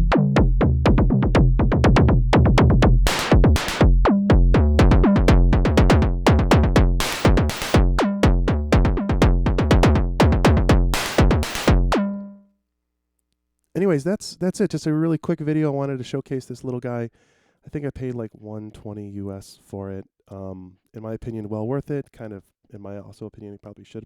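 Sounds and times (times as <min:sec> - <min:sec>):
electronic kick drum thumps: 0:00.0 - 0:12.2
electronic snare hits: 0:03.1 - 0:03.9, 0:05.8 - 0:08.3, 0:10.9 - 0:12.1.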